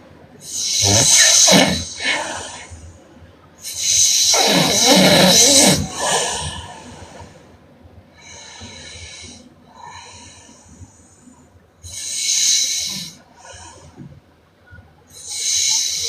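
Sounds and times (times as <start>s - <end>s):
woman snoring: 0.5s - 2.6s, 3.7s - 6.5s.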